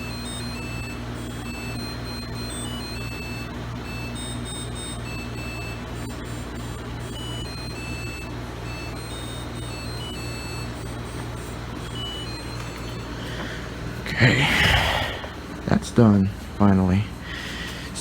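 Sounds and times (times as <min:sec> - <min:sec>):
steady low hum: 0:13.2 - 0:15.8.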